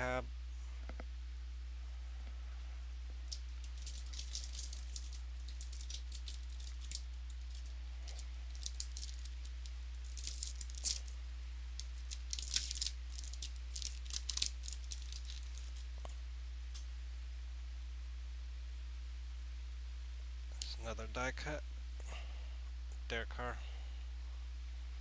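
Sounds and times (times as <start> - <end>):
low electrical hum: 0.0 - 25.0
trading card packs rustling: 3.3 - 11.2, 11.8 - 16.0.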